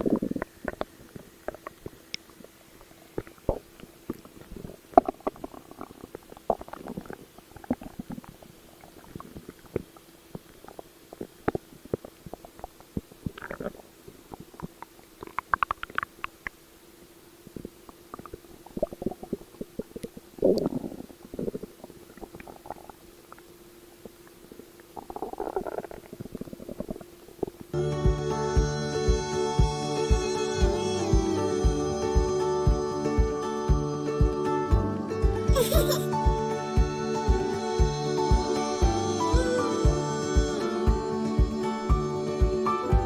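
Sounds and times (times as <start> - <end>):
stomach growling and gurgling: 0.0 - 16.5, 17.5 - 23.4, 24.0 - 27.8
faint steady hum: 0.0 - 43.0.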